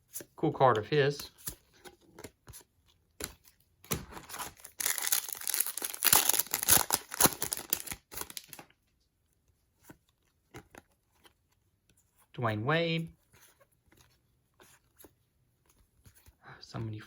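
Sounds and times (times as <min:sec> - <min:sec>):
wrapper tearing and crinkling: 0:03.9 - 0:08.7.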